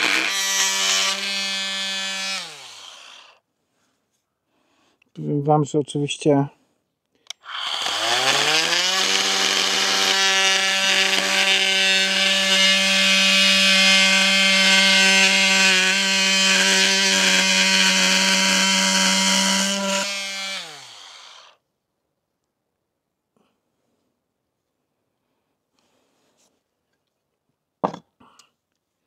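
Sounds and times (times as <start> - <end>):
oscillating multi-tool whine: 0.0 - 3.4, 7.4 - 21.6
blade cutting into board: 7.4 - 21.5.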